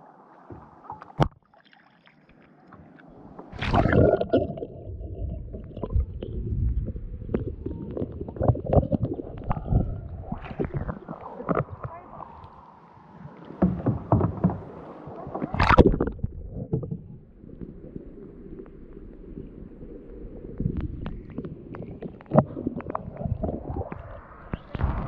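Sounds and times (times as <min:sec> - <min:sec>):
paddle splashing water: 0:00.0 - 0:06.3, 0:07.2 - 0:25.0
low rumble: 0:03.5 - 0:12.7, 0:23.1 - 0:25.0
knocks: 0:13.6 - 0:14.7.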